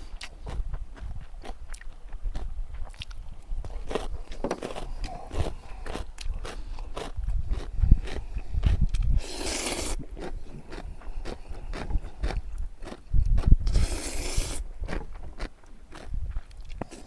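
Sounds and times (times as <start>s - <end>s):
crunching and chewing food: 0.0s - 17.0s
short hissing noises: 13.7s - 14.6s.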